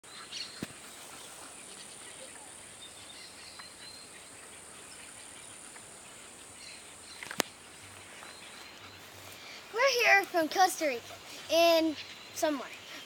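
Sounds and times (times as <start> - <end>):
faint bird chirps: 0.1 - 10.0.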